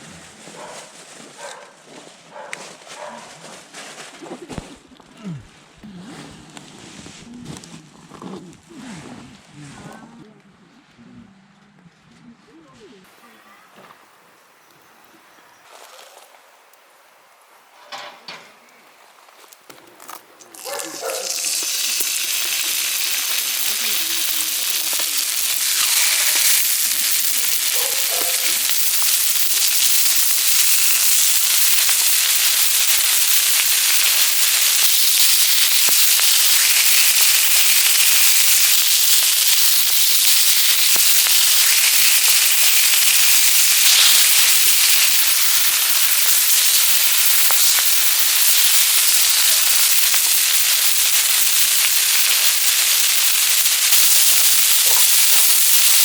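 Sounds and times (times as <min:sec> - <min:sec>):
pork sizzling on a griddle: 0:20.1 - 0:56.0
fat popping and spitting: 0:20.4 - 0:56.0.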